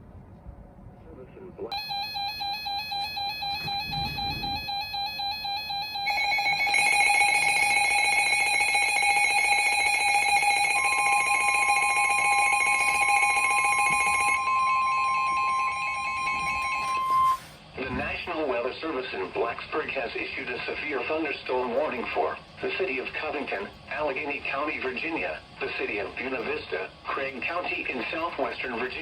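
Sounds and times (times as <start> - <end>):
pulsing electronic beep: 1.7 - 8.5, 14.4 - 17.4
steady alarm tone: 1.7 - 17.6.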